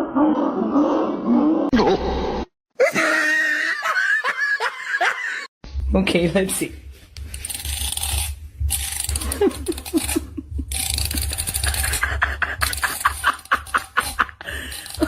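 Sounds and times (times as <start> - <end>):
person laughing: 2.8 - 5.5, 9.2 - 15.0.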